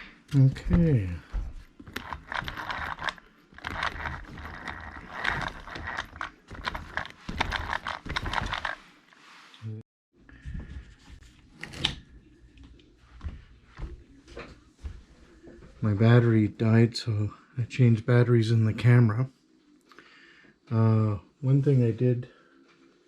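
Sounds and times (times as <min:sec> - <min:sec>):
small plastic and metal parts clicking: 0:01.8 - 0:08.8.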